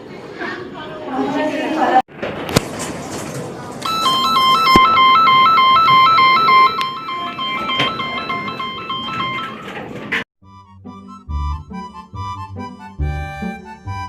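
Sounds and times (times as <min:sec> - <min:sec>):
background noise: 0:00.0 - 0:10.2
two-tone warbling alarm: 0:03.8 - 0:09.9.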